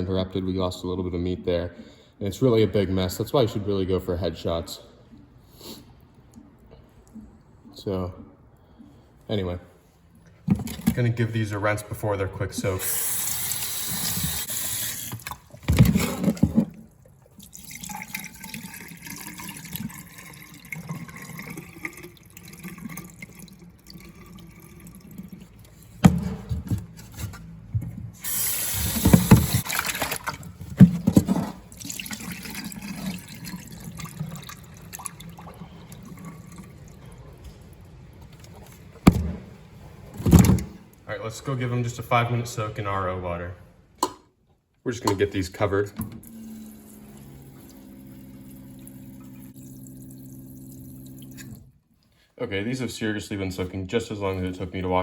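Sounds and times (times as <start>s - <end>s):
sink tap running: 12.6s - 15.4s, 28.2s - 29.8s, 46.1s - 51.6s
water splashing: 28.3s - 37.3s.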